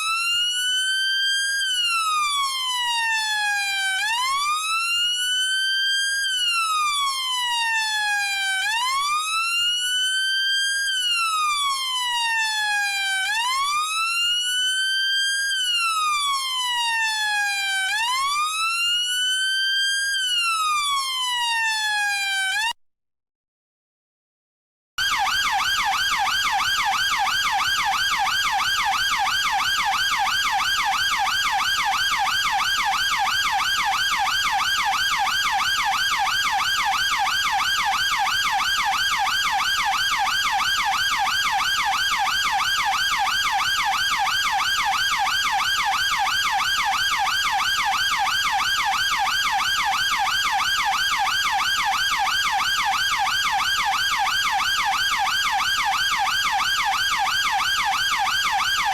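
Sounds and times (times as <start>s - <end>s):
police siren yelping: 0.0s - 22.7s, 25.0s - 58.9s.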